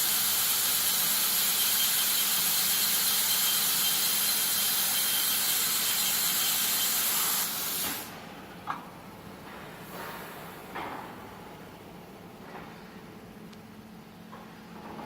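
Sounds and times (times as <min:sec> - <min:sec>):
drilling and sawing machine hissing: 0:00.0 - 0:08.2.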